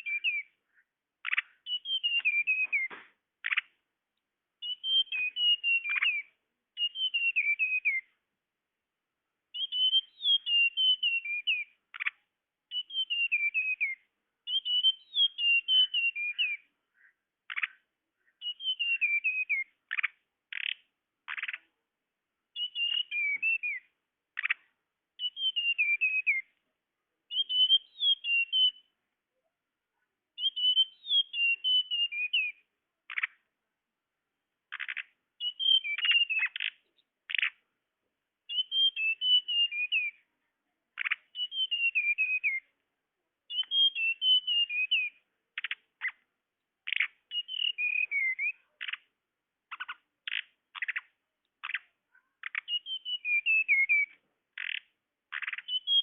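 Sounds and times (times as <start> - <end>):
bird twittering call: 0.0 - 3.8, 4.6 - 8.1, 9.6 - 21.7, 22.6 - 26.5, 30.4 - 33.4, 34.7 - 37.6, 38.5 - 40.2, 41.0 - 42.6, 43.5 - 46.2, 46.8 - 49.1, 49.7 - 56.0
sharp ticking bird notes: 0.0 - 3.8, 4.6 - 8.2, 9.5 - 21.8, 22.6 - 26.6, 30.4 - 33.5, 34.7 - 37.7, 41.0 - 42.7, 43.5 - 49.1, 49.7 - 56.0.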